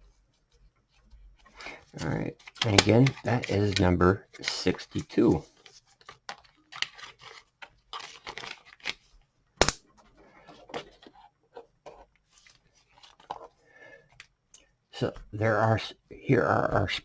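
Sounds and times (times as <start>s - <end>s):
handling rustling and scraping: 0.0s - 9.3s, 9.9s - 14.3s.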